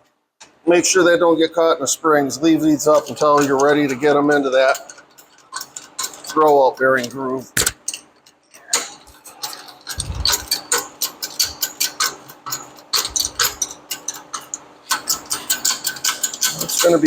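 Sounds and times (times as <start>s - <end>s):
metal parts clicking and clinking: 2.8s - 17.0s
low thumps: 10.0s - 10.5s.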